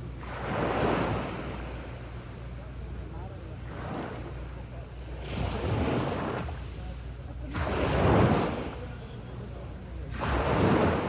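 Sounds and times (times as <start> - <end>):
sea waves breaking on beach: 10.1 - 11.0.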